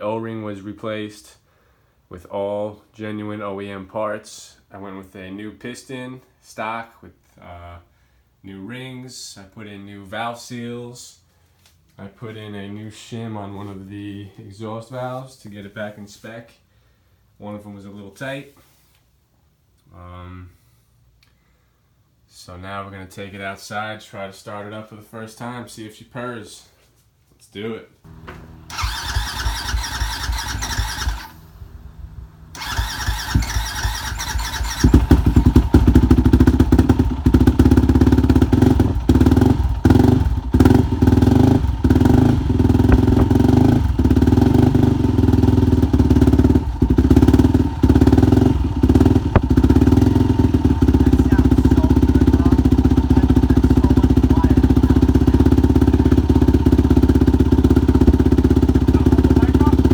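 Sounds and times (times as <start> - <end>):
motorcycle engine turning over: 28.1 - 31.8, 32.5 - 59.9
motorcycle engine running: 28.1 - 59.9.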